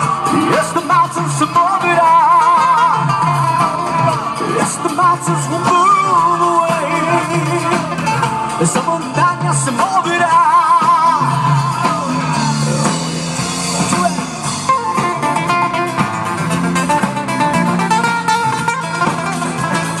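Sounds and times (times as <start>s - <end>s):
person singing with vibrato: 0.0s - 15.0s
guitar accompaniment: 0.0s - 20.0s.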